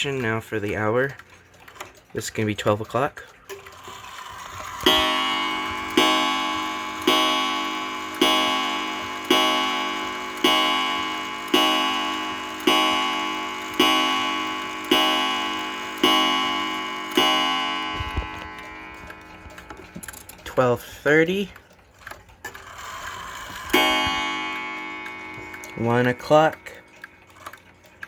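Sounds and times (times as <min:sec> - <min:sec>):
clock striking on gong: 0:04.0 - 0:20.5, 0:22.6 - 0:27.6.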